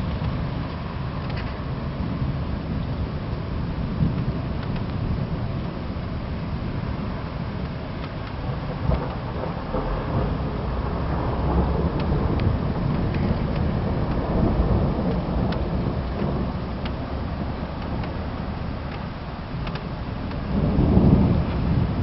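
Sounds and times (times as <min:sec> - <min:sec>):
rolling thunder: 0:00.0 - 0:22.0
faint ticks: 0:15.0 - 0:17.0, 0:18.8 - 0:20.4.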